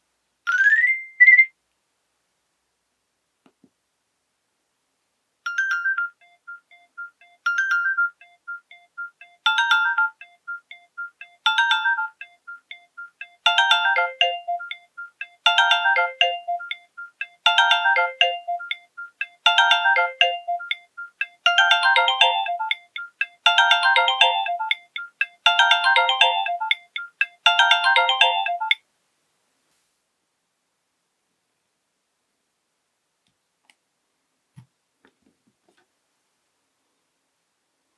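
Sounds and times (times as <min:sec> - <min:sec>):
polyphonic phone ringtone: 0:05.5 - 0:28.8.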